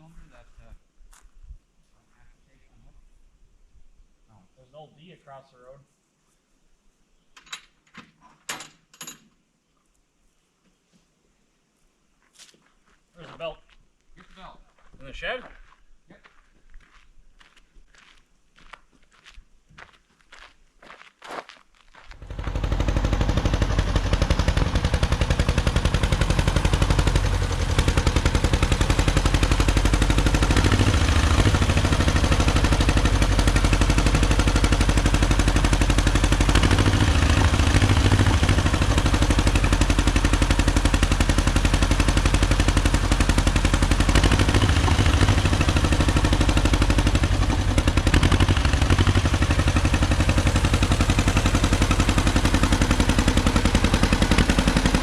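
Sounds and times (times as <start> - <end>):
tractor engine running: 22.1 - 55.0.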